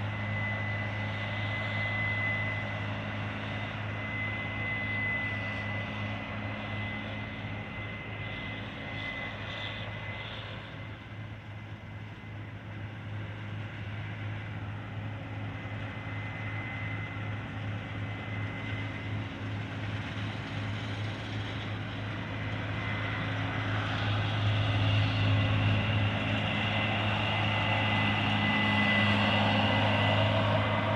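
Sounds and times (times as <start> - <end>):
machinery engine humming: 12.0 - 30.9.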